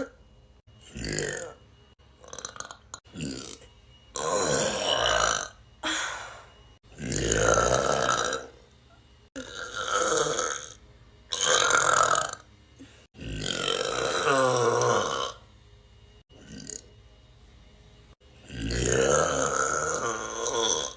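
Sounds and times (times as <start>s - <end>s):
person burping: 0.0s - 0.2s, 0.9s - 1.6s, 2.2s - 8.6s, 9.4s - 15.4s, 18.5s - 20.9s.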